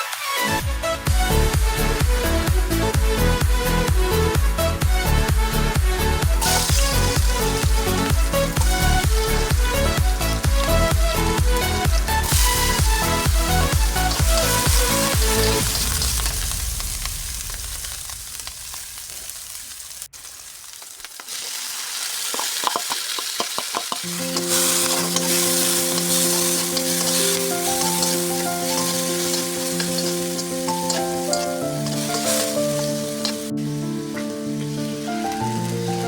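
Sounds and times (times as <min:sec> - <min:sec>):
background music: 0:00.0 - 0:16.7, 0:24.0 - 0:36.0
food sizzling in a pan: 0:06.4 - 0:36.0.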